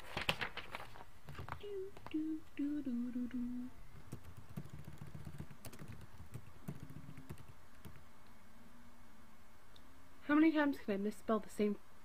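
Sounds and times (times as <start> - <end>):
woman humming: 1.6 - 3.8
computer keyboard typing clicks: 4.1 - 8.0.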